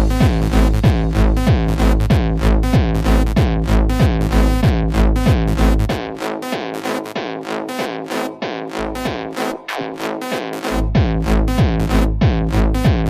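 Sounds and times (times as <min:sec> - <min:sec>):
light percussion: 0:00.0 - 0:06.0
kick drum: 0:00.0 - 0:06.2, 0:10.9 - 0:13.0
deep bass: 0:00.0 - 0:06.3, 0:10.6 - 0:13.0
synthesizer chords: 0:00.0 - 0:13.0.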